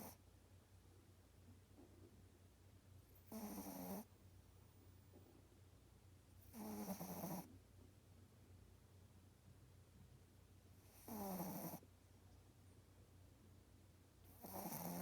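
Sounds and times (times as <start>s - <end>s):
pet snoring: 3.2s - 4.1s, 6.4s - 7.5s, 10.8s - 11.8s, 14.3s - 15.0s.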